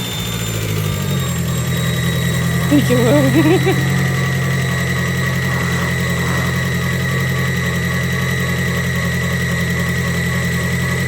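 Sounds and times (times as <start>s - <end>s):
car engine idling: 3.8s - 11.0s.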